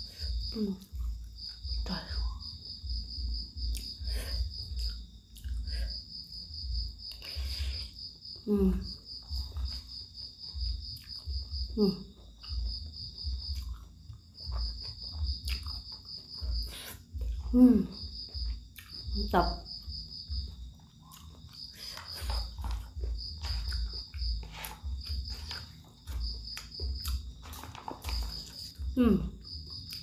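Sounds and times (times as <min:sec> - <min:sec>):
crickets chirping: 0:00.0 - 0:30.0
person humming: 0:08.4 - 0:08.9, 0:29.0 - 0:29.4
slurping and chewing noodles: 0:13.4 - 0:17.4, 0:20.7 - 0:28.9.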